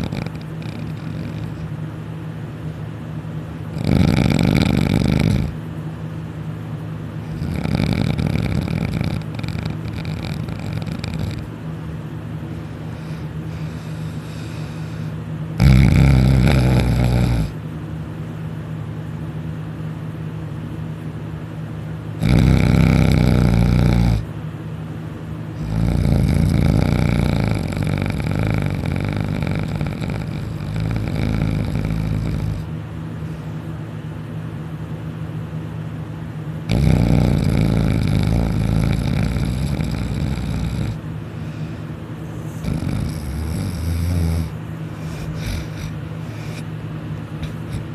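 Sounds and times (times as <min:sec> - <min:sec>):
man snoring loudly: 0:00.0 - 0:01.7, 0:03.7 - 0:05.6, 0:07.3 - 0:11.5, 0:13.0 - 0:17.6, 0:22.2 - 0:24.3, 0:25.6 - 0:32.7, 0:36.7 - 0:41.8, 0:42.4 - 0:46.7
steady low hum: 0:00.0 - 0:47.9.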